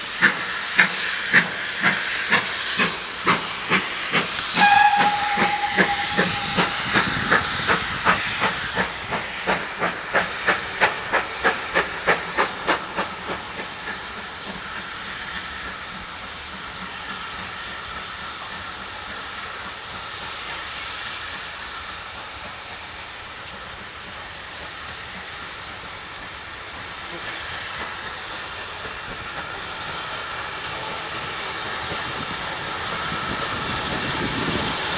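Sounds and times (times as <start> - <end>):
steam hiss and running noise: 0.0 - 34.9
steam locomotive exhaust beats: 0.0 - 34.9
locomotive whistle blast: 2.1 - 8.9.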